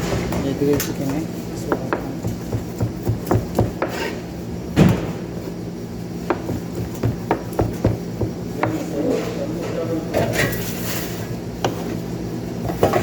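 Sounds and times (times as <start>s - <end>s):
cleaver chopping on board: 1.7s - 4.1s.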